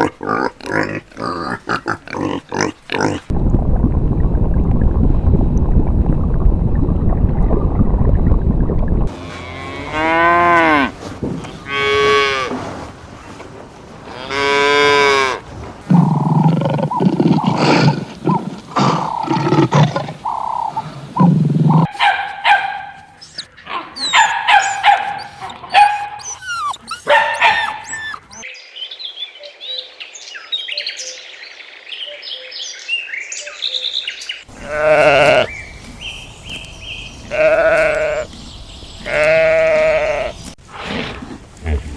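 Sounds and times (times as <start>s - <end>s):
cattle mooing: 14.2s - 20.2s, 21.2s - 28.4s, 34.5s - 35.5s, 37.3s - 38.3s, 39.1s - 40.4s.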